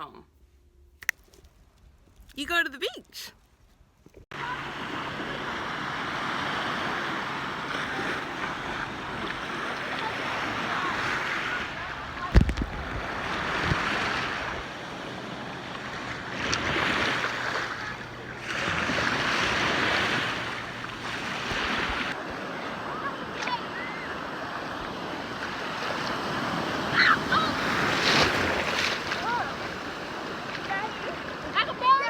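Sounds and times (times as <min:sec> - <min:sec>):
ocean waves breaking on beach: 0:04.3 - 0:32.0
wind on microphone: 0:07.8 - 0:17.2.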